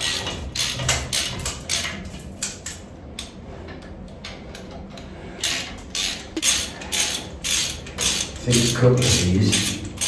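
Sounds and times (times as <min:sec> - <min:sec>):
ratchet spanner clicking: 0:00.0 - 0:03.3, 0:05.4 - 0:10.0.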